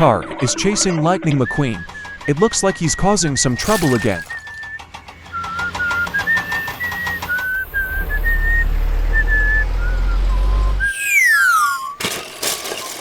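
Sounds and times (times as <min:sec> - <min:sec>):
whistled tune: 0:01.3 - 0:12.0
slide whistle glide: 0:05.3 - 0:12.0.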